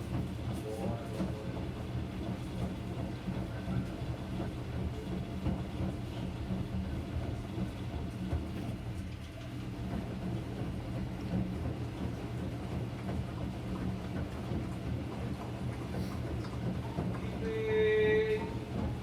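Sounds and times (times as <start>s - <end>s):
washing machine motor hum: 0.0s - 19.0s.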